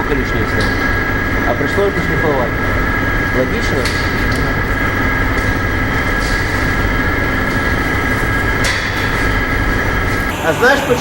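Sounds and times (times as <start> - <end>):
electric sander running: 9.6 - 11.0.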